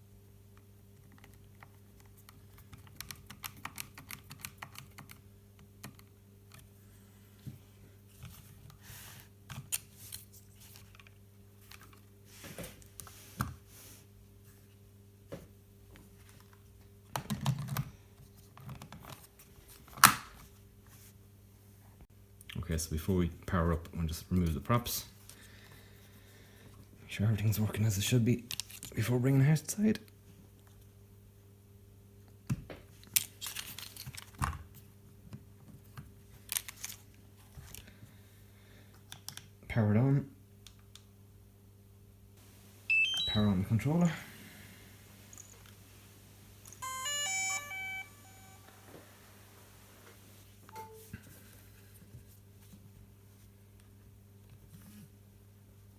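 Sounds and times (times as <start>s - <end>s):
faint electrical hum: 0.0s - 55.9s
small clicks taps and scrapes of parts: 0.6s - 6.7s, 9.5s - 13.6s, 16.2s - 19.3s, 39.0s - 39.5s
faint low hum: 42.4s - 55.2s.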